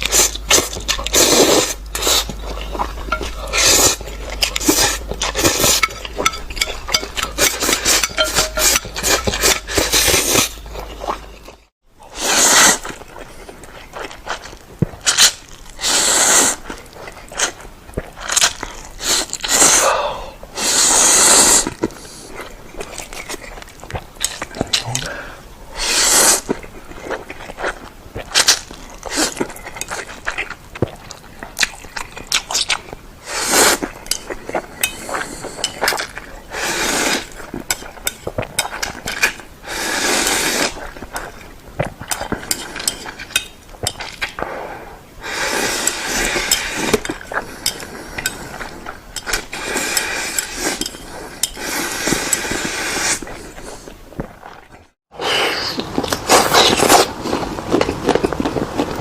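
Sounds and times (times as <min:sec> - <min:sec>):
wet chewing: 0:00.0 - 0:11.7, 0:12.7 - 0:19.8, 0:20.7 - 0:25.2, 0:26.1 - 0:44.6, 0:45.2 - 0:54.9, 0:55.6 - 0:59.0
noodle slurping: 0:00.0 - 0:19.9, 0:20.6 - 0:23.6, 0:25.8 - 0:44.6, 0:45.2 - 0:54.6, 0:55.2 - 0:58.9
utensil clinking against bowl: 0:03.0 - 0:10.8.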